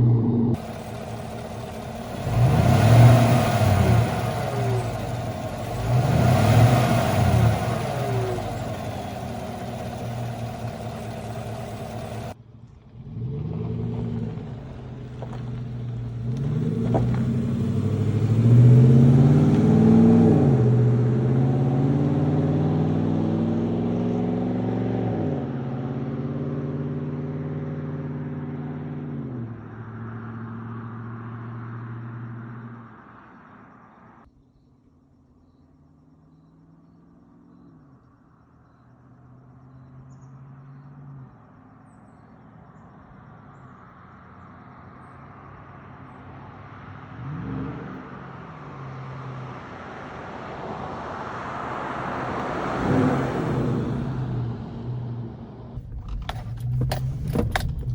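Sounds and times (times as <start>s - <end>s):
truck engine revving and idling: 0.0s - 33.9s, 51.3s - 57.9s.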